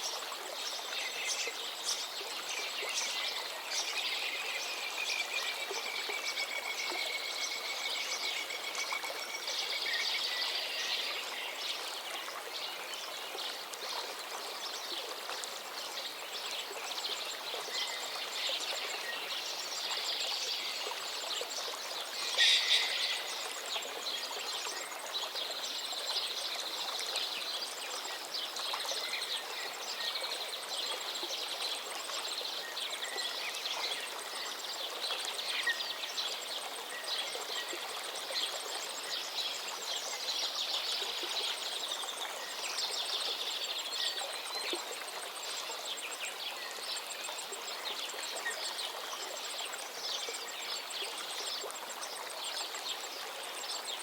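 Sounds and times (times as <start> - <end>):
flowing river: 0.0 - 54.0
songbirds singing: 16.0 - 26.7.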